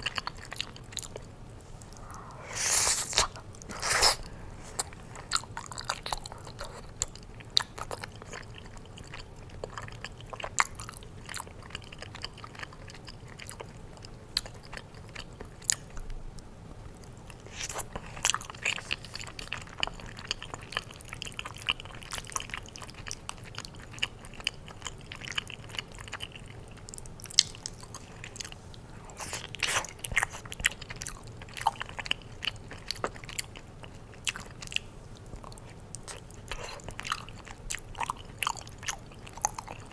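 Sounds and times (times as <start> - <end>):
chewing and biting food: 0.0 - 1.3, 2.9 - 16.0, 17.0 - 39.9.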